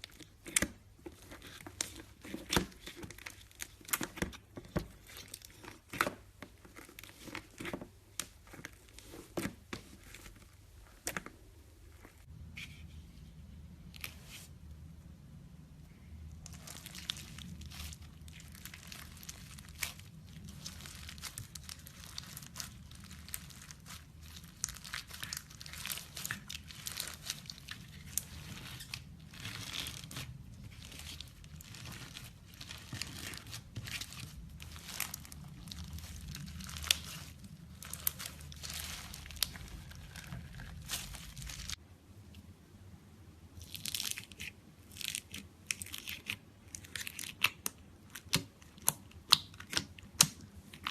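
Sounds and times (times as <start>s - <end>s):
slime crackling and popping: 16.4s - 41.8s.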